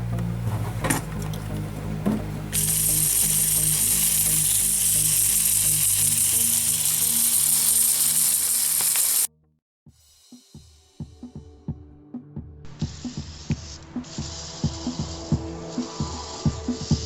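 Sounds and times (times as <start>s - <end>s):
low background music: 0.0s - 17.0s
loud steady hiss: 2.5s - 9.3s, 12.7s - 17.0s.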